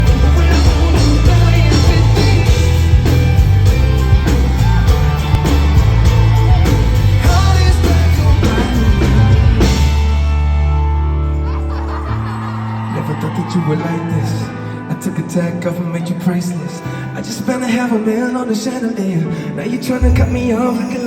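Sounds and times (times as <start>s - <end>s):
steady drum beat: 0.0s - 10.2s
loud pop music: 0.0s - 10.9s, 13.5s - 21.0s
heavy bass line: 0.0s - 11.2s, 20.0s - 21.0s.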